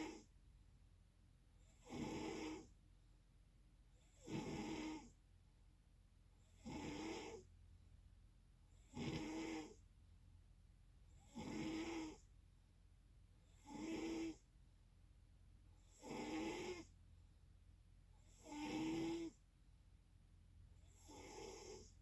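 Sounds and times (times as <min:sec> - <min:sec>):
snoring: 0:00.0 - 0:00.3, 0:01.6 - 0:02.7, 0:04.0 - 0:05.2, 0:06.4 - 0:07.5, 0:08.8 - 0:09.8, 0:11.2 - 0:12.3, 0:13.6 - 0:14.5, 0:15.8 - 0:17.0, 0:18.2 - 0:19.4, 0:20.8 - 0:22.0.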